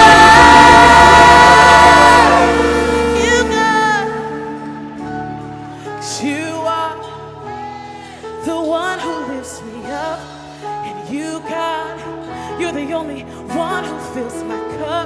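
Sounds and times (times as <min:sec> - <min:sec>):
worship band sustained chords: 0:00.0 - 0:07.2
person singing: 0:00.0 - 0:15.0.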